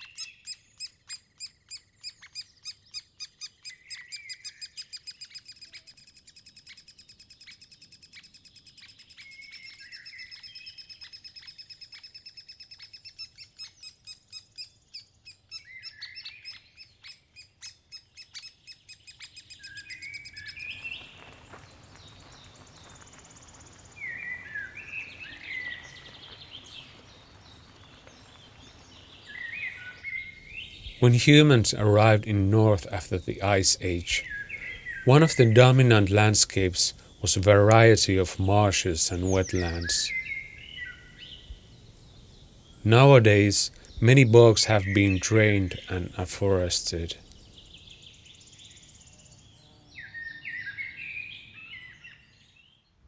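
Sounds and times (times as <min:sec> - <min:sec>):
birds chirping: 0:29.4 - 0:48.2.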